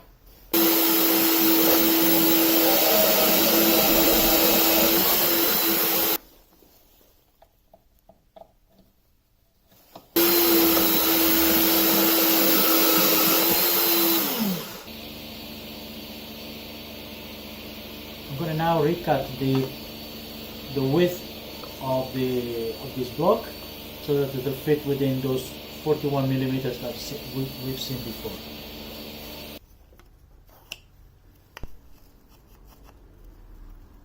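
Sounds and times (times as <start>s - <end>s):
electric shop machine whining: 0.6s - 6.2s, 10.2s - 29.6s.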